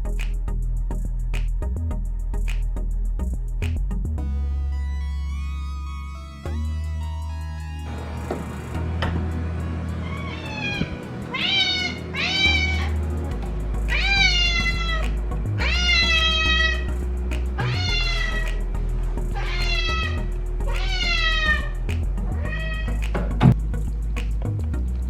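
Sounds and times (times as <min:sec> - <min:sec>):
background music: 0:00.0 - 0:25.0
cat meowing: 0:10.0 - 0:13.0, 0:13.9 - 0:15.0, 0:15.6 - 0:16.9, 0:17.6 - 0:18.6, 0:19.4 - 0:21.8, 0:22.4 - 0:23.0.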